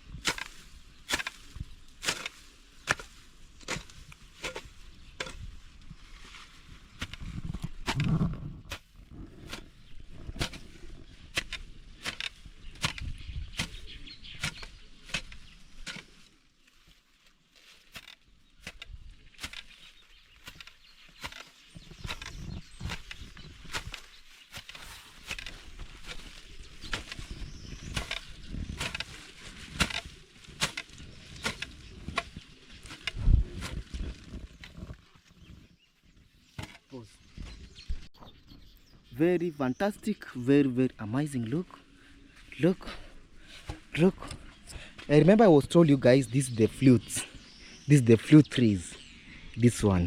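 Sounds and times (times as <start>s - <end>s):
cut grass rustling: 0.0s - 38.1s, 39.2s - 50.0s
hand tool chopping grass and soil: 0.1s - 17.0s, 17.6s - 35.0s, 36.5s - 37.6s, 42.5s - 47.0s.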